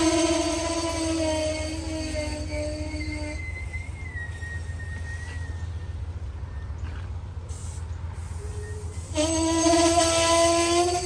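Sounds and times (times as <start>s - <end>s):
locomotive air horn blast: 0.0s - 5.6s, 7.5s - 11.0s.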